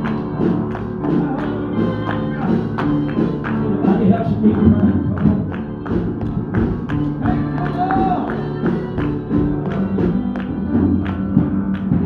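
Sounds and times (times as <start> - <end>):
gospel music: 0.0 - 12.0
people singing: 1.1 - 10.6.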